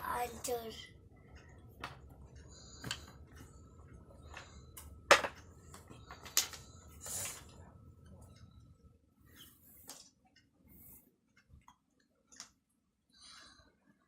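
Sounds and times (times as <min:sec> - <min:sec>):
wooden blocks clacking: 0:04.3 - 0:06.7.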